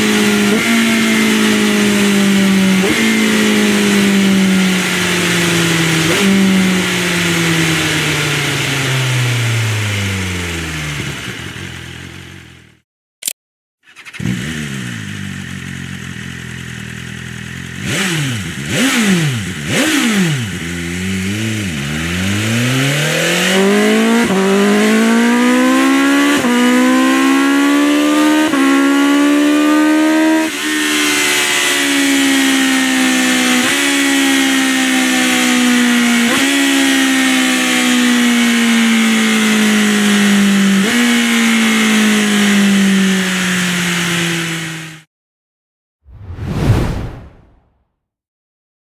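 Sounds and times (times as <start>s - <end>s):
motorcycle engine revving: 13.9s - 22.6s
rush of wind: 46.1s - 47.7s.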